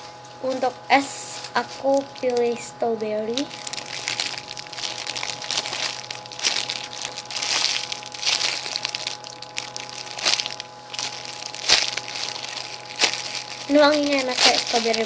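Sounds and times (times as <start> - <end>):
foam toy squeezed and rustling: 3.4 - 15.0.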